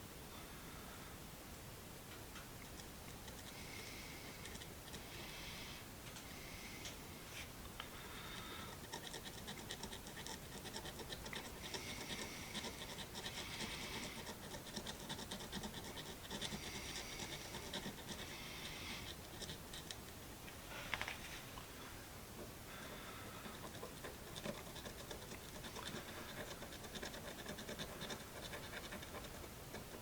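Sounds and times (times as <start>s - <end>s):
marker tip scratching on metal: 8.8s - 20.0s, 23.5s - 30.0s.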